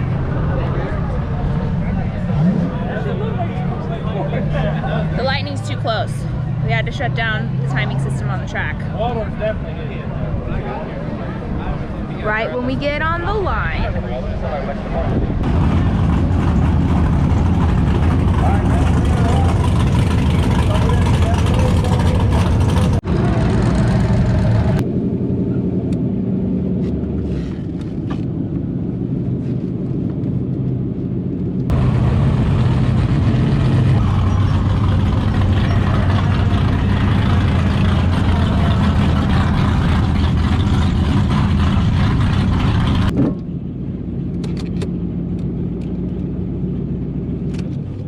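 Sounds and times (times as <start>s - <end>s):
car engines idling: 0.0s - 48.0s
loud noisy running sound: 15.0s - 29.2s, 31.7s - 44.9s.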